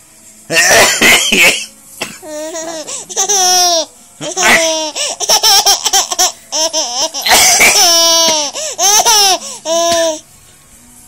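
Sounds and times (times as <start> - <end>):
baby laughing: 2.3 - 10.2.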